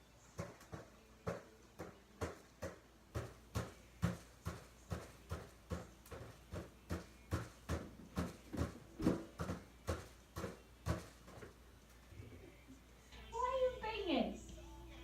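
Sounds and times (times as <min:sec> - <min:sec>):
thuds of hands and feet on floor: 0:00.4 - 0:11.5.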